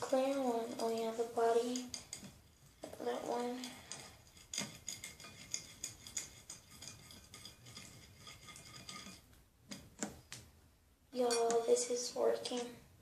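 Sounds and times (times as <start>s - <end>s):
utensil scraping a plate: 0.2s - 10.1s.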